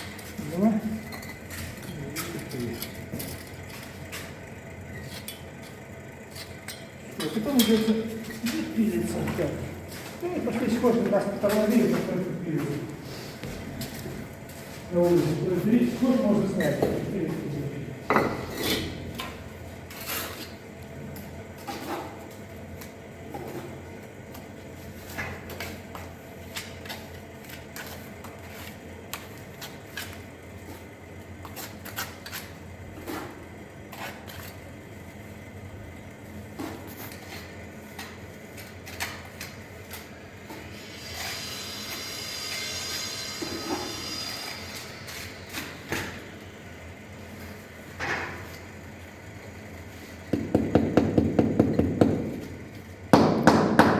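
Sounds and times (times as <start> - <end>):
bricks and tools knocking: 50.4 - 52.5.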